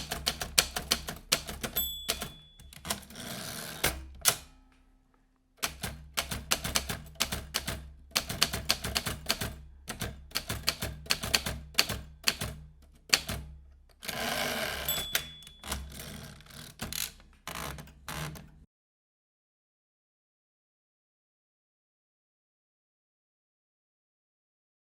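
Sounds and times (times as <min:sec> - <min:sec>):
typewriter carriage rasp: 0:00.0 - 0:04.4, 0:05.6 - 0:18.6
typewriter key clacks: 0:00.0 - 0:04.5, 0:05.6 - 0:13.5, 0:14.1 - 0:18.6
typewriter bell ding: 0:00.1 - 0:03.5, 0:14.2 - 0:16.3.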